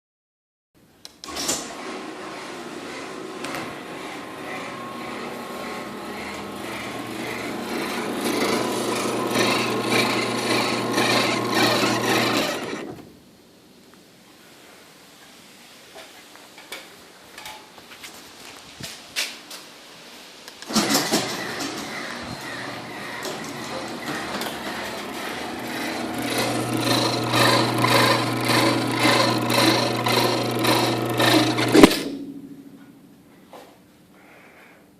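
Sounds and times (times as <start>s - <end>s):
garage door opener motor hum: 1.2s - 13.1s, 20.6s - 32.4s
loud clunk: 31.6s - 33.0s.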